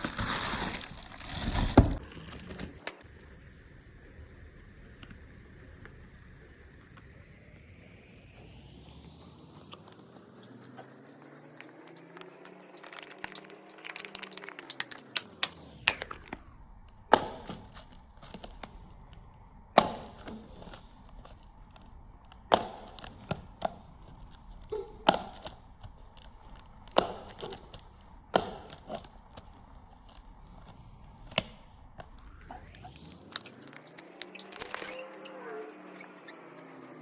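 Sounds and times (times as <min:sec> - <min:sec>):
packaging crinkling and tearing: 0:00.0 - 0:03.2, 0:11.2 - 0:16.5, 0:32.2 - 0:36.9.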